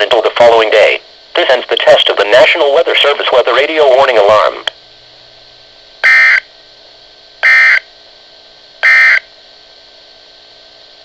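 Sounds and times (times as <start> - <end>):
faint radio hiss: 0.0 - 11.0
harsh two-tone data buzz: 6.0 - 6.6, 7.4 - 8.0, 8.8 - 9.3.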